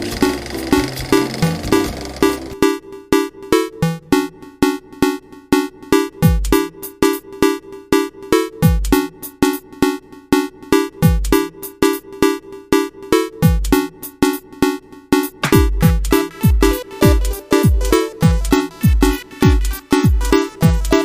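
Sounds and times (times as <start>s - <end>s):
electronic music with drum-machine beat: 4.0s - 7.2s, 8.6s - 12.1s, 13.4s - 21.0s.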